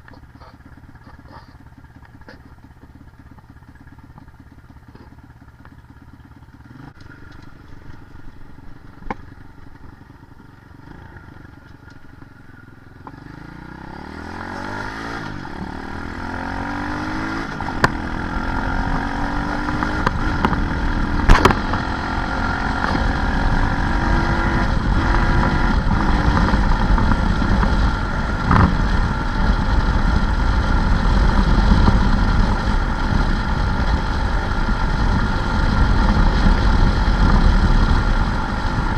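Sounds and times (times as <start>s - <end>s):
small vehicle engine revving: 12.6s - 38.9s.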